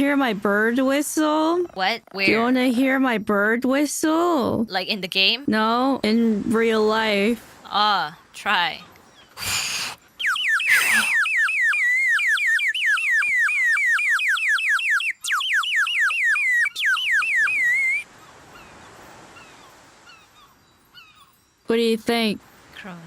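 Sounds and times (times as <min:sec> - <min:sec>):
bird whistle warbling trill: 0:09.0 - 0:21.7.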